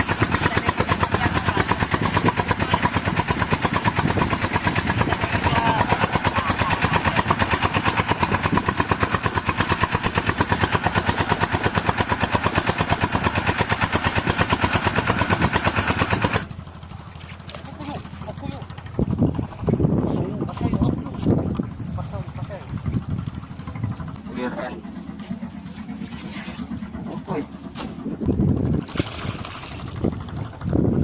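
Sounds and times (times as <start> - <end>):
boat engine running: 0.0 - 31.0.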